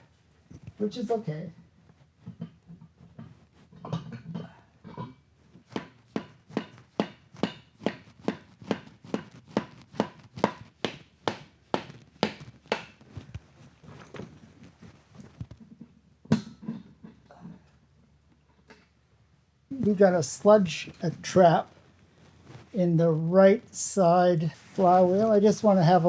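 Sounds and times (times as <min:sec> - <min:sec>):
hammer tapping on metal: 0:05.7 - 0:13.0.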